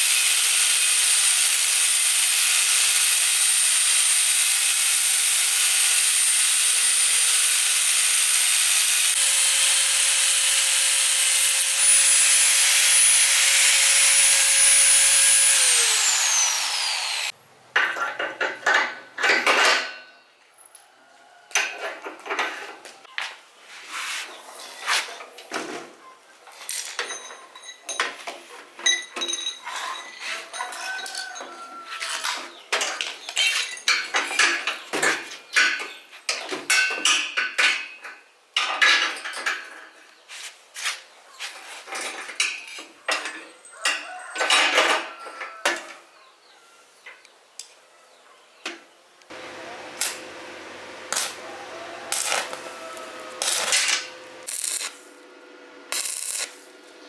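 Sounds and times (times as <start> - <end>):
steady machine hum: 49.3 - 53.4
metal parts and tools clinking: 53.4 - 55.1.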